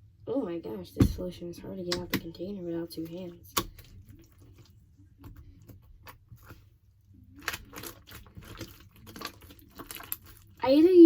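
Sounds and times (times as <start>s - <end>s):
slime clicking and squelching: 1.9s - 10.7s.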